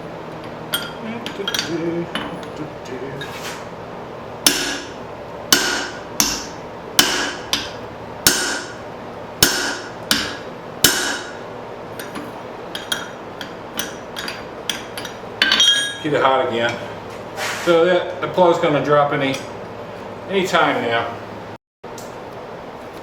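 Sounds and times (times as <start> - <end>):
hammer striking punch on anvil: 4.4 - 8.8, 9.4 - 11.4, 12.0 - 16.1.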